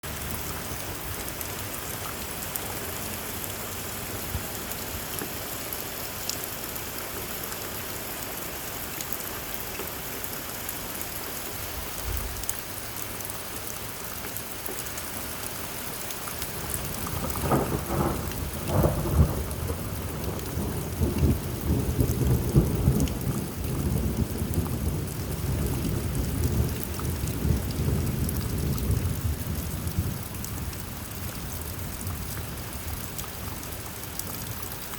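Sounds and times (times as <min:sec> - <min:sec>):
heavy rain falling: 0:00.0 - 0:34.9
thunder cracking and rumbling: 0:11.9 - 0:12.5, 0:16.5 - 0:32.6.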